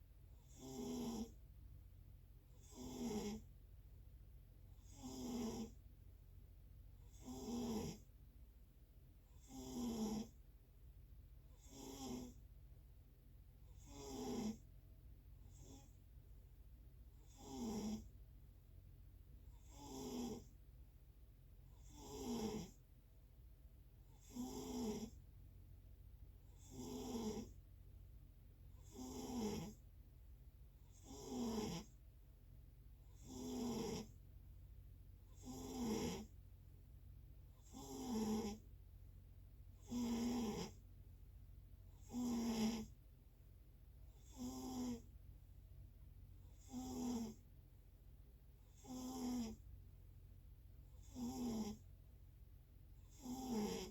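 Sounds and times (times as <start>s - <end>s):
snoring: 0.4s - 1.4s, 2.5s - 3.5s, 4.7s - 5.8s, 7.0s - 8.1s, 9.3s - 10.4s, 11.5s - 12.4s, 13.7s - 14.7s, 15.4s - 16.0s, 17.2s - 18.2s, 19.5s - 20.6s, 21.7s - 22.8s, 24.1s - 25.2s, 26.5s - 27.6s, 28.7s - 29.8s, 30.8s - 32.0s, 33.0s - 34.2s, 35.3s - 36.4s, 37.6s - 38.7s, 39.8s - 40.8s, 41.9s - 43.0s, 44.1s - 45.1s, 46.4s - 47.4s, 48.6s - 49.6s, 50.9s - 51.9s, 53.0s - 53.9s.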